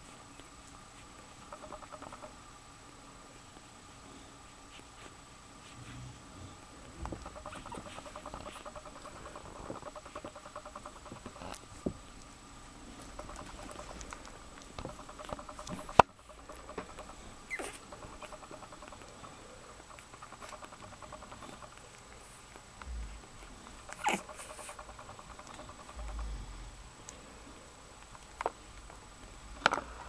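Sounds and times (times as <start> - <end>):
puppies suckling with smacking clicks: 0.0 - 2.4, 6.8 - 26.3, 28.0 - 29.9
puppy squeaks: 7.3 - 8.6, 17.5 - 18.3, 23.9 - 24.7.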